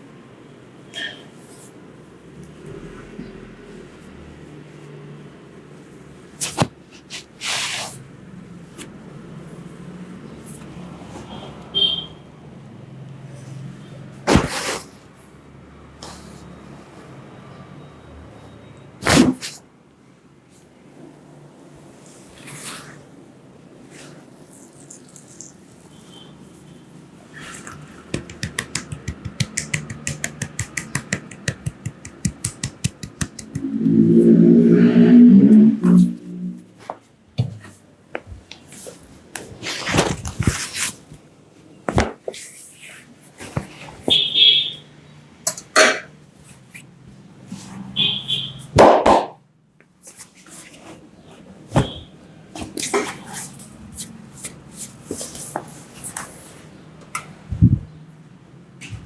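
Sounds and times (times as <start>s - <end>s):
hand strikes of massage: 28.1s - 34.1s
low-pitched steady tone: 33.5s - 36.8s.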